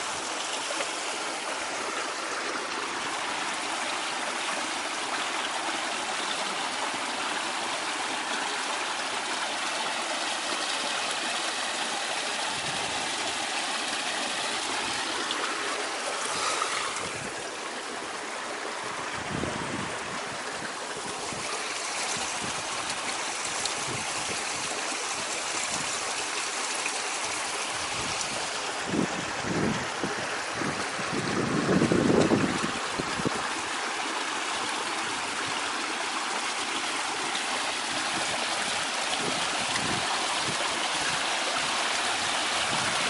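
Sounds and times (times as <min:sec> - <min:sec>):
water pouring and splashing: 0:00.0 - 0:43.0.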